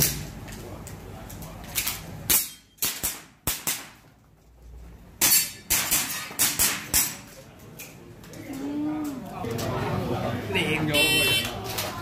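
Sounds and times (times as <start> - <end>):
airsoft handgun firing: 2.3 - 4.0.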